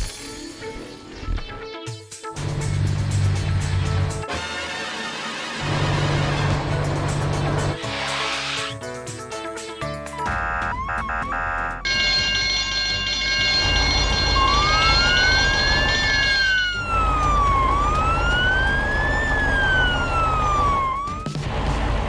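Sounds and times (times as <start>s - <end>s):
cartoon siren wailing: 10.3s - 21.3s
held steady tones: 10.4s - 21.2s
low vehicle rumble: 13.4s - 22.0s.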